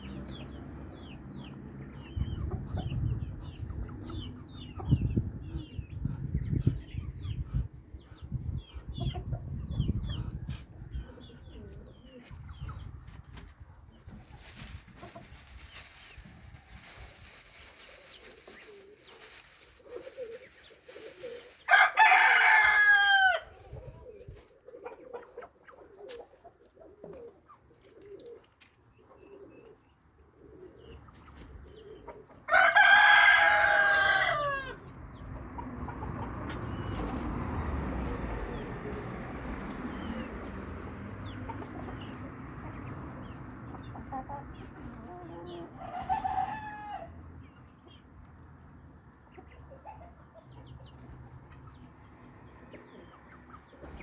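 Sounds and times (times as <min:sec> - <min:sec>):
rooster crowing: 0:21.7 - 0:23.5, 0:32.5 - 0:34.8, 0:46.0 - 0:47.2.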